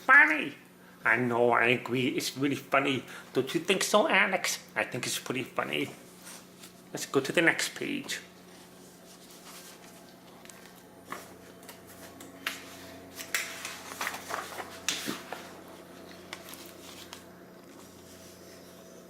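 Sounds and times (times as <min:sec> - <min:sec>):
book pages turning: 0:08.4 - 0:18.8.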